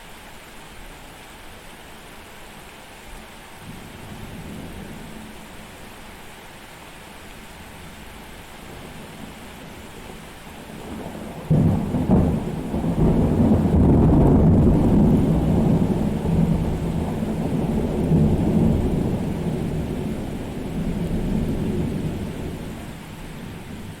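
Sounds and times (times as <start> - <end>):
steady rain hiss: 0.0 - 24.0
thunderclap with deep rumble: 10.7 - 22.8.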